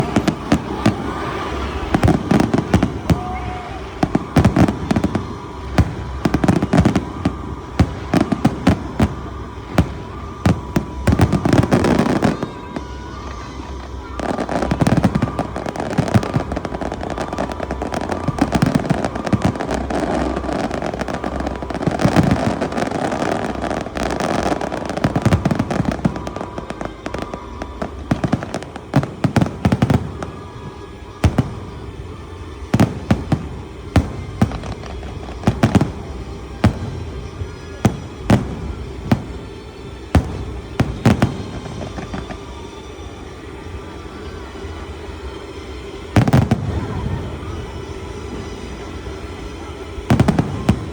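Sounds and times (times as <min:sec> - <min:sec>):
fireworks bangs and pops: 0:00.0 - 0:50.9
fireworks crackling: 0:00.0 - 0:50.9.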